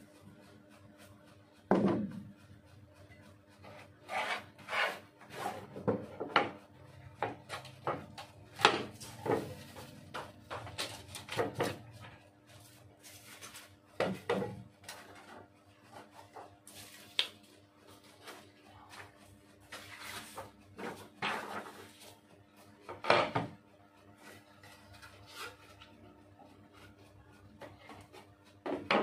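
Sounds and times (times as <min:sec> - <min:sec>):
sliding scrapes: 0:03.6 - 0:05.7.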